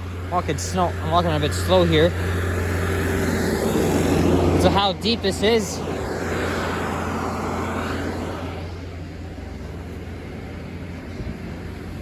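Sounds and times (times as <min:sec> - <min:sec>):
car passing with tyre hiss: 0:00.0 - 0:12.0
low traffic rumble: 0:00.0 - 0:12.0.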